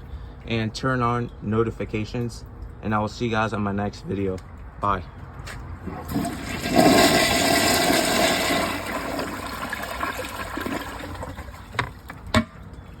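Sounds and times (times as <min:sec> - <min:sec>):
toilet flushing: 0:05.8 - 0:11.8.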